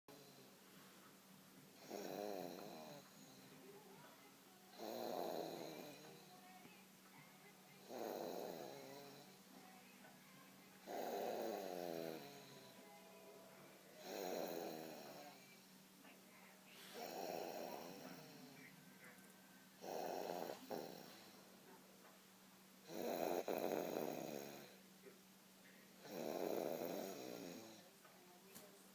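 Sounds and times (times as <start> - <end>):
baby snoring: 1.8 - 3.6, 4.7 - 6.3, 7.8 - 9.4, 10.8 - 12.8, 14.0 - 15.6, 16.8 - 18.6, 19.8 - 21.4, 22.8 - 24.8, 26.0 - 27.9.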